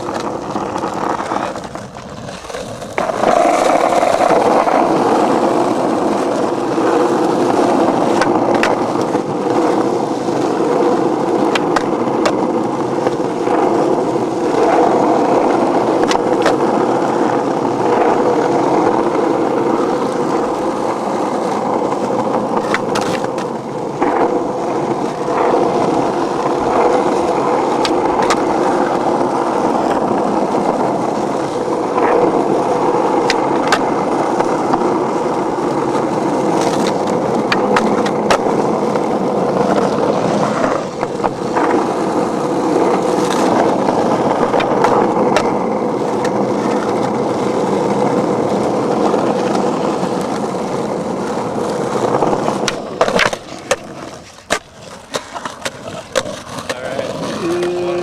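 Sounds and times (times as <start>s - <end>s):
skateboard wheels on rough pavement: 0.0s - 58.0s.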